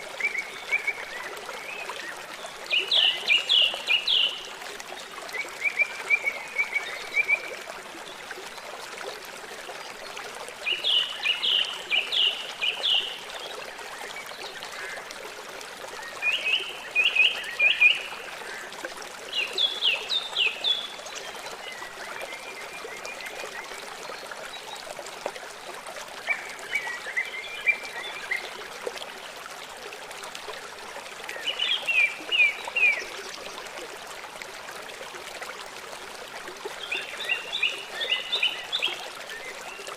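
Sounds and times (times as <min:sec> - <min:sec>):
small stream rushing: 0:00.0 - 0:39.9
songbird singing: 0:02.7 - 0:04.5, 0:10.6 - 0:13.3, 0:36.8 - 0:39.8.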